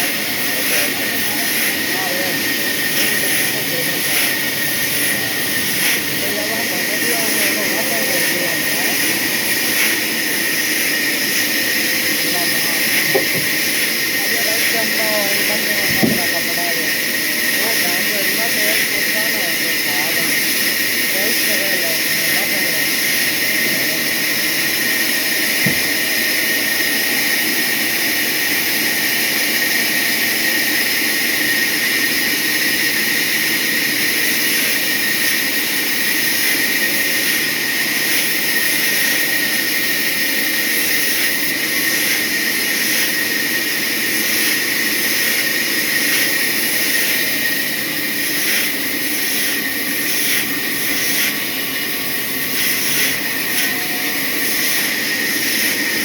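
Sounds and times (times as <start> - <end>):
sawmill saw cutting log: 0.0 - 56.0.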